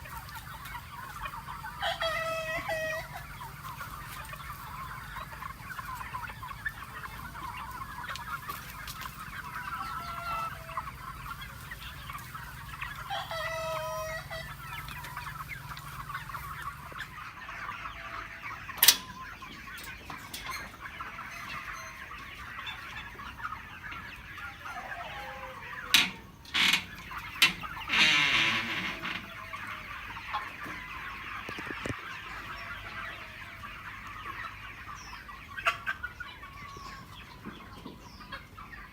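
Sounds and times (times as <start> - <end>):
chickens clucking: 0.0 - 38.9
rooster call: 24.4 - 27.0.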